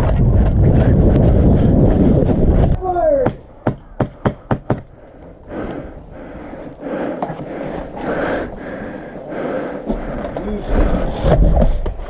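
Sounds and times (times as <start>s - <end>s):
rustling and movement: 4.9s - 12.0s.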